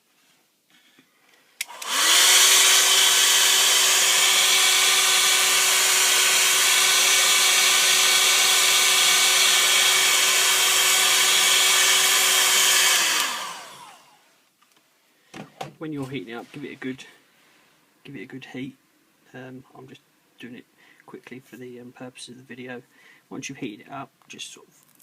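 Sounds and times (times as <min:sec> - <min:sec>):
hot-air blower fan hum: 0:01.6 - 0:14.3.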